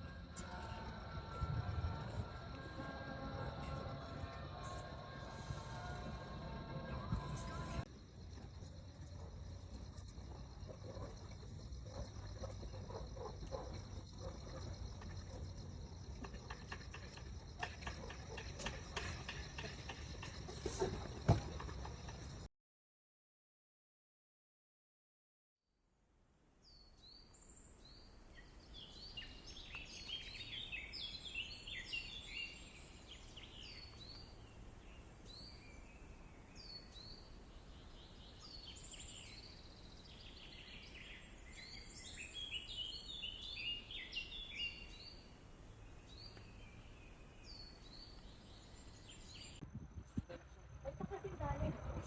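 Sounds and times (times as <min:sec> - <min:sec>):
faint low rumble: 0:00.0 - 0:16.5, 0:49.5 - 0:52.0
birds chirping and singing: 0:00.0 - 0:22.5, 0:27.4 - 0:49.6.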